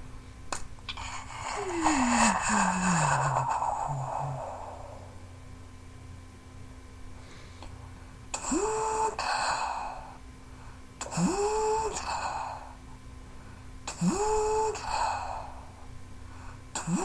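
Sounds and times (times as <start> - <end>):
vocal imitation of a war machine: 0.9 - 5.2, 11.0 - 12.7, 13.9 - 15.6, 16.8 - 17.0.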